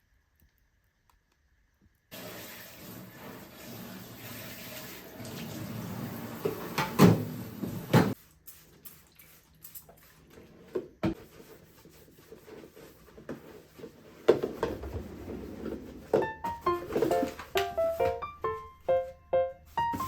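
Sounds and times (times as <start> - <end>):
kitchen tap running: 2.1 - 10.2.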